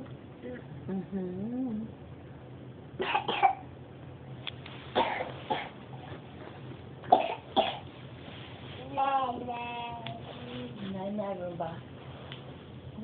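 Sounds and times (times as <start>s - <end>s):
person coughing: 3.0s - 3.6s, 5.0s - 5.8s, 7.1s - 7.8s.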